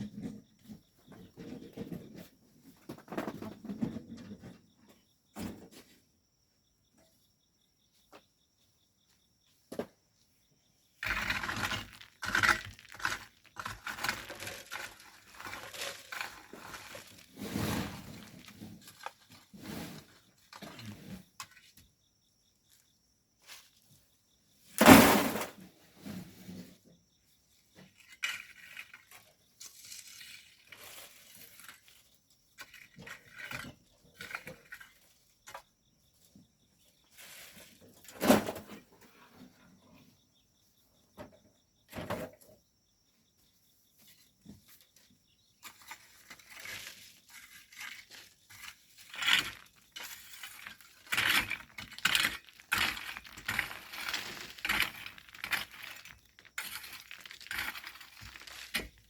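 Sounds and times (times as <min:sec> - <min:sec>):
hand tools scraping sand and stones: 0:11.0 - 0:21.3, 0:27.9 - 0:35.0, 0:45.6 - 0:59.0.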